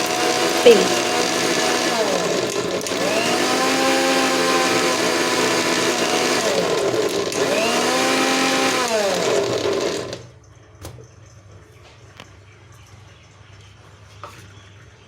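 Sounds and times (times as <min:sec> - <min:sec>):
electric blender motor whine: 0:00.0 - 0:10.3.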